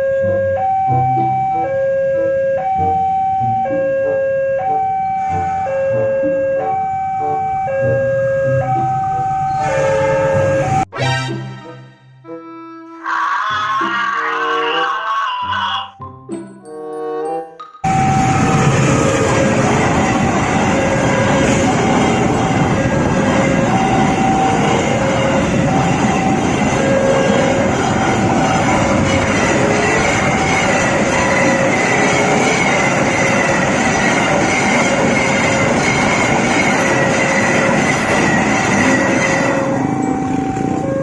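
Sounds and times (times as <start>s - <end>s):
train rolling past: 17.8s - 41.0s
wheel squeal: 23.4s - 41.0s.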